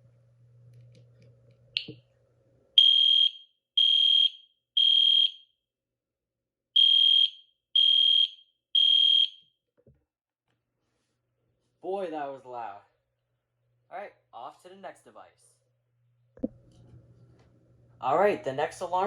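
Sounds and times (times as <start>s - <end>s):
fire alarm horn blasts: 2.8s - 5.5s, 6.8s - 9.4s.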